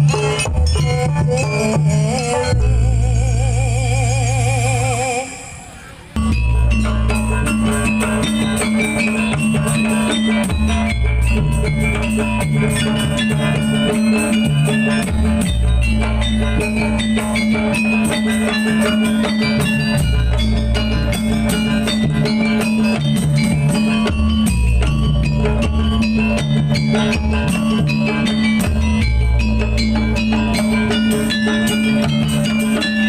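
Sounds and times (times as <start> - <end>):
drums: 0.0 - 33.0
bright melodic notes: 6.2 - 33.0
steady bass line: 6.2 - 33.0.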